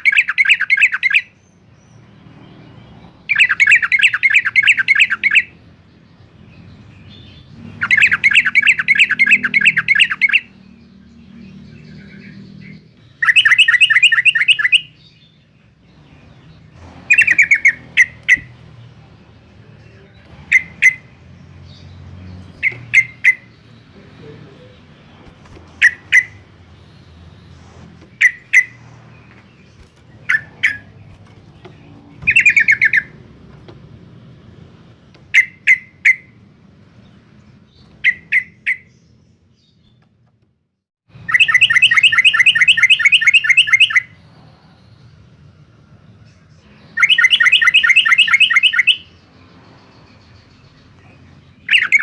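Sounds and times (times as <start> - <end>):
bird calling in sharp notes: 0.0 - 1.3, 3.3 - 5.5, 7.8 - 10.5, 12.0 - 15.0, 22.6 - 24.8, 32.3 - 33.2, 41.2 - 44.2, 46.9 - 49.2, 51.6 - 52.0
bird chattering: 0.0 - 1.4, 3.3 - 5.6, 7.2 - 10.6, 11.8 - 15.2, 17.1 - 18.8, 19.5 - 26.7, 28.1 - 33.4, 41.2 - 44.2, 46.7 - 52.0.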